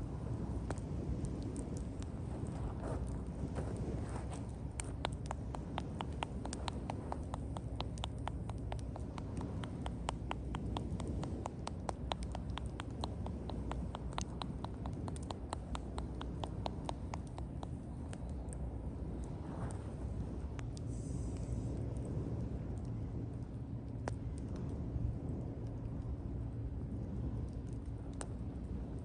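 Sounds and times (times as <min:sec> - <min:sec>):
hand massage taps: 0:04.8 - 0:18.3.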